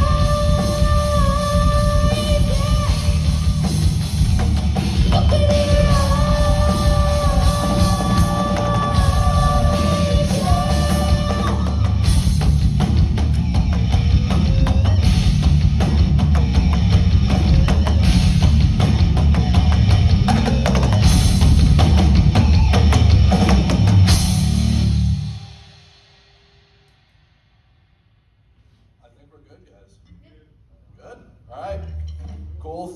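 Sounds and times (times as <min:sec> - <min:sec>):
rock band playing: 0:00.0 - 0:25.9
pounding drum kit: 0:00.0 - 0:26.8
cymbal crashes: 0:24.1 - 0:27.8.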